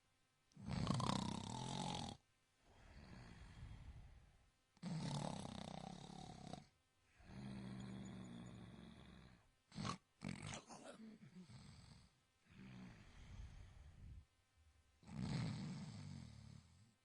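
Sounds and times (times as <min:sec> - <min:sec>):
person snoring: 0:00.6 - 0:14.2, 0:15.0 - 0:16.9
sharp snorts: 0:09.7 - 0:11.1.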